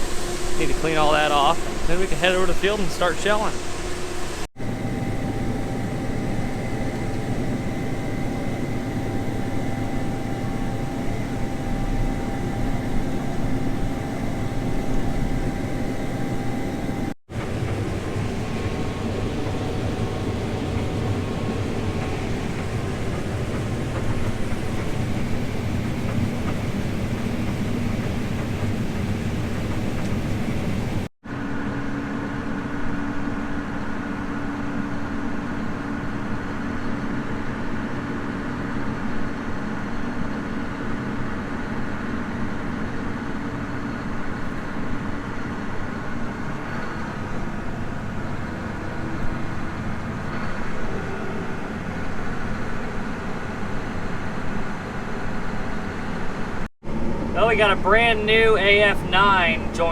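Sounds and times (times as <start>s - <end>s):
farm machinery engine running: 0.0s - 31.1s, 56.9s - 59.9s
held tone: 57.4s - 59.9s.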